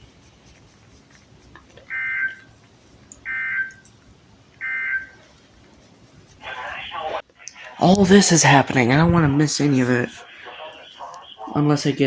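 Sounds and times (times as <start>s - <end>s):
buzzing data tone bursts: 3.2s - 3.8s, 4.6s - 5.2s.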